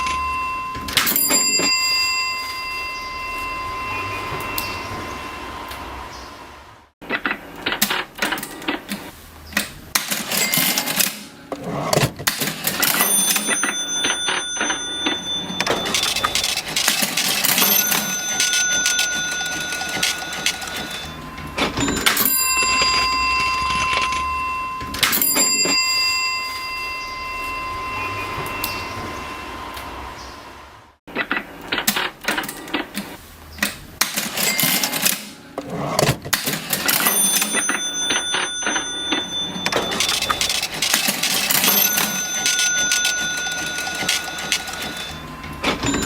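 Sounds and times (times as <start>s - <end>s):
cash register keys clattering: 0.0s - 3.0s, 7.8s - 27.6s, 34.0s - 46.0s
cash register bell ringing: 0.0s - 6.1s, 10.0s - 30.2s, 34.0s - 46.0s.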